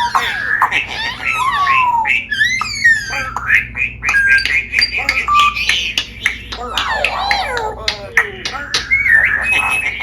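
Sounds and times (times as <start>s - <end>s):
parrot chattering and squawking: 0.0s - 10.0s
parrot whistles: 8.7s - 10.0s.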